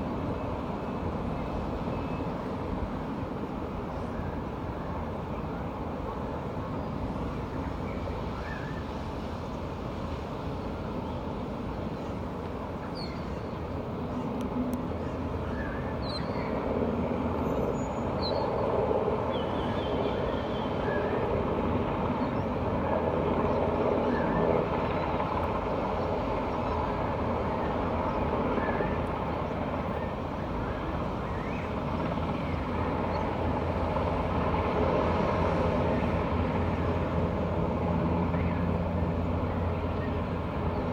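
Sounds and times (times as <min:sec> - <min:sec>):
helicopter rotor and turbine: 0:00.0 - 0:40.9.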